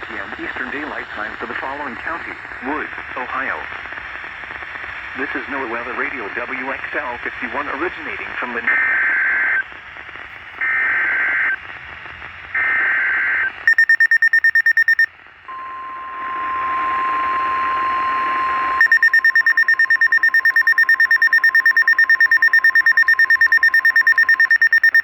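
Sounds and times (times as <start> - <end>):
rapid electronic beeping: 12.6 - 15.1, 17.5 - 25.0
steady warning alarm tone: 12.6 - 25.0.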